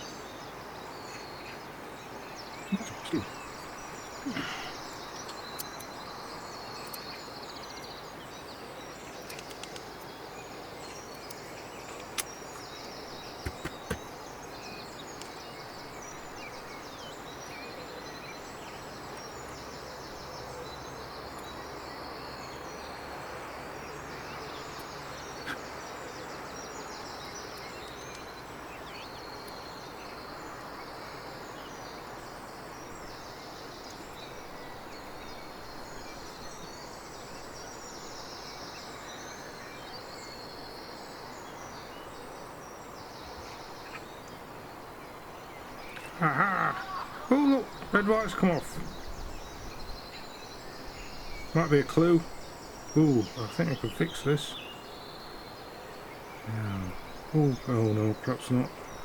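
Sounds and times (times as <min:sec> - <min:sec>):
background hiss: 0:00.0 - 0:59.0
sharp clicks: 0:09.2 - 0:10.0, 0:13.4 - 0:14.1.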